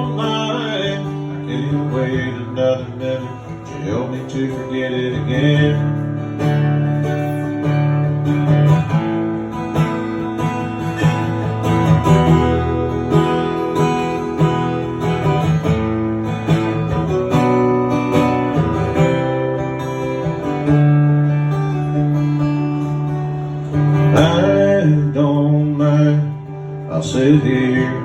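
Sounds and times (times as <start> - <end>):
strummed guitar chords: 0.0 - 28.0.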